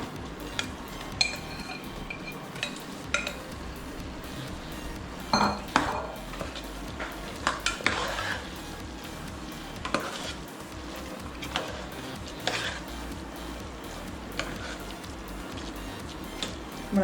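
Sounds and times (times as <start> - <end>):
light sizzle: 0.0 - 17.0
metal spoon scraping a pot: 0.5 - 3.5, 5.3 - 8.8, 9.8 - 10.5, 11.4 - 12.9, 14.4 - 15.0.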